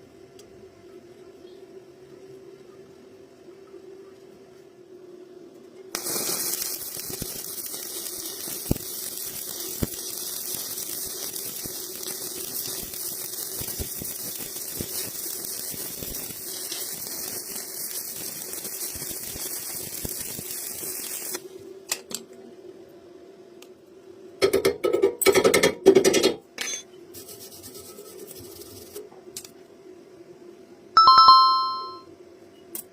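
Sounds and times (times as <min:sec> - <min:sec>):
arc welding crackling sizzle: 0:04.6 - 0:22.2, 0:27.1 - 0:29.7.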